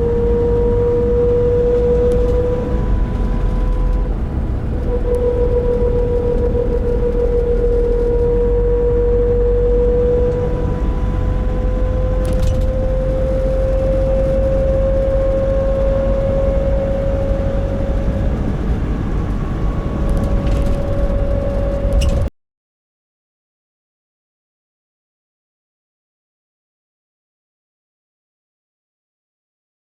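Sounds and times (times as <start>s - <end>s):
road noise: 0.0s - 22.3s
vehicle hum rising in pitch: 0.0s - 22.3s.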